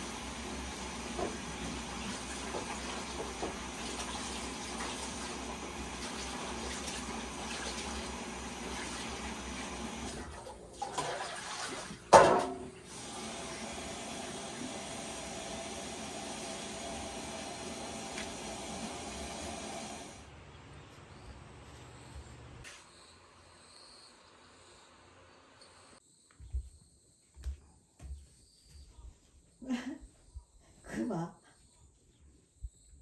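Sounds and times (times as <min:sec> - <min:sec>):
water running: 0:00.0 - 0:20.2.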